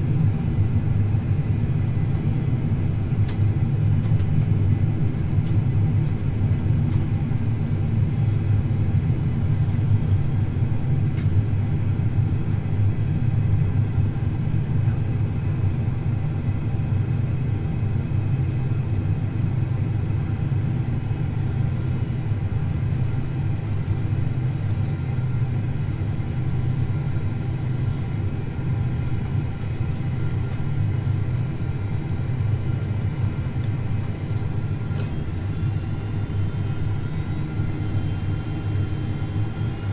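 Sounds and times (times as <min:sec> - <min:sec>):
airplane cabin rumble: 0:00.0 - 0:39.9
faint steady whining tones: 0:16.8 - 0:39.9.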